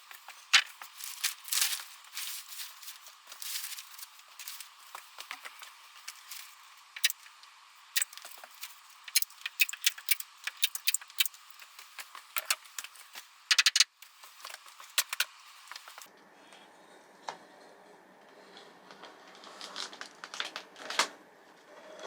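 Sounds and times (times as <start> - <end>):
sharp clicks and ticks: 7.0 - 7.3, 8.0 - 12.9, 13.5 - 13.9, 15.0 - 16.0.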